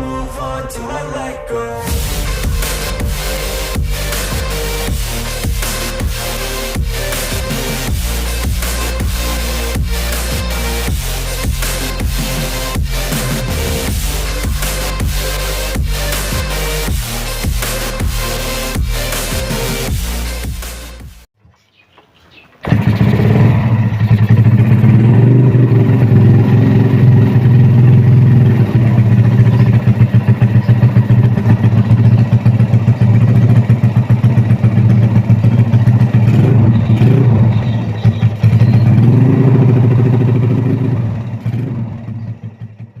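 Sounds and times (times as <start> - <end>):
motorcycle engine idling lumpy: 22.0 - 43.0.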